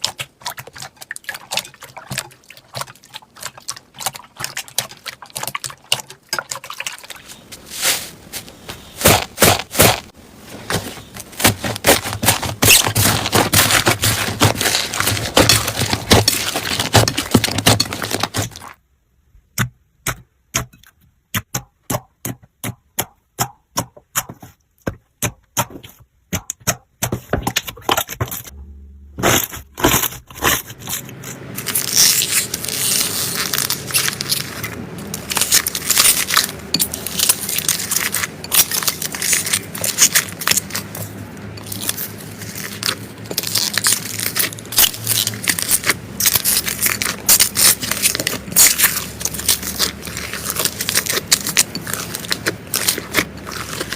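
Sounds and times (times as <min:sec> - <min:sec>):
slime crackling and popping: 0:06.9 - 0:10.2, 0:10.8 - 0:18.8, 0:29.2 - 0:53.9.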